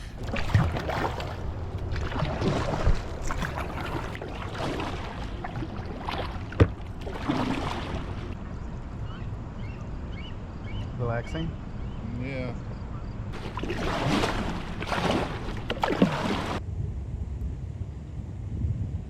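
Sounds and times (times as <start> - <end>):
paddle strokes splashing: 0.0 - 8.4, 13.4 - 16.6
water sloshing: 0.0 - 8.4, 13.3 - 16.6.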